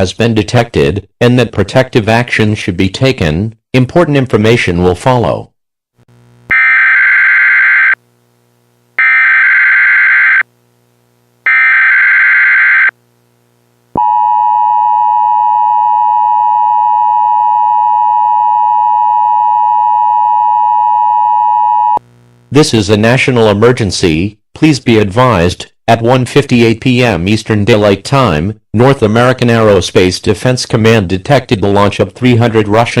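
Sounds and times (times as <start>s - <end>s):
digital data bursts: 6.5s - 8.0s, 9.0s - 10.4s, 11.5s - 12.9s.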